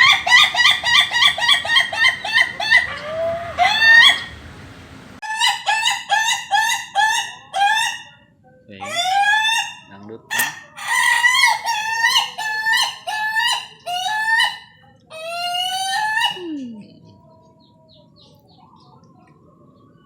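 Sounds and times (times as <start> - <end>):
rooster crowing: 0.0 - 6.4.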